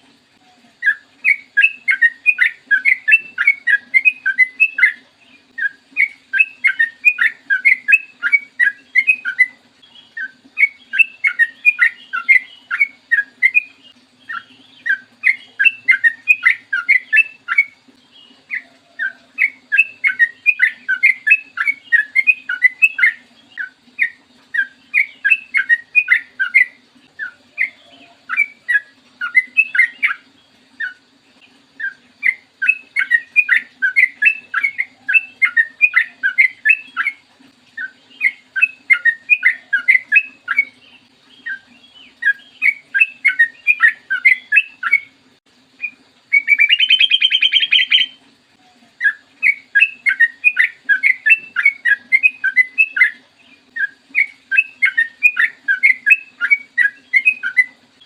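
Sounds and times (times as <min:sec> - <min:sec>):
bulbul singing bubbly notes: 0:00.8 - 0:58.0.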